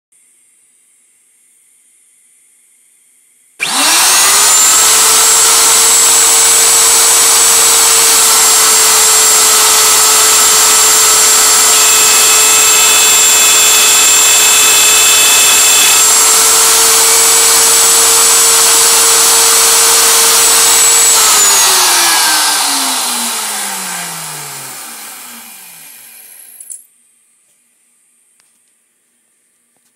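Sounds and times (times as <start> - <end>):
router spindle whining: 3.6 - 26.6.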